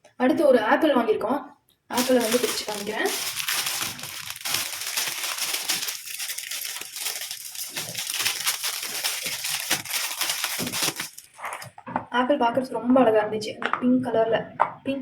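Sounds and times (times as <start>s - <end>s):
plastic packaging crinkling: 1.9s - 11.8s.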